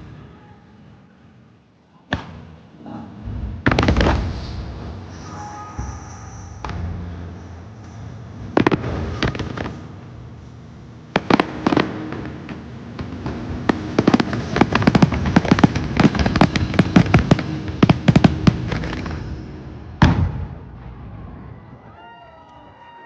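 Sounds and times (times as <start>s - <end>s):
fireworks exploding: 3.4s - 5.2s, 5.8s - 21.4s.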